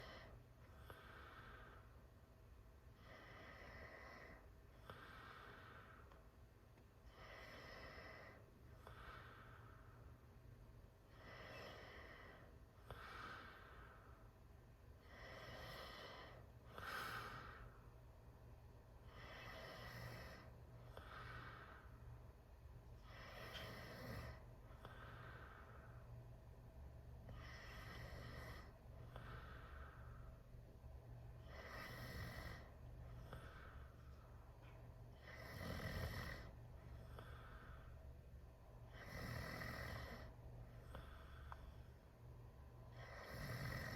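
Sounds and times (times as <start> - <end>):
person snoring open-mouthed: 31.5 - 32.7, 35.2 - 36.5, 39.0 - 40.3, 43.0 - 43.9.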